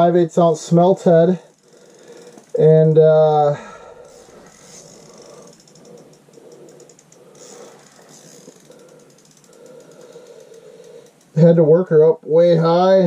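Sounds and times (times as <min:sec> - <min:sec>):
faint steady hum: 0:00.0 - 0:13.0
fishing reel clicking: 0:01.5 - 0:02.7, 0:04.0 - 0:11.4.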